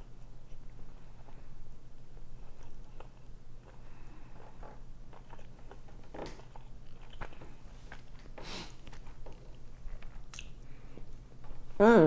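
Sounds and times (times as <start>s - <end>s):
person chewing food: 0.0s - 11.8s
mouth smacks: 10.3s - 10.6s.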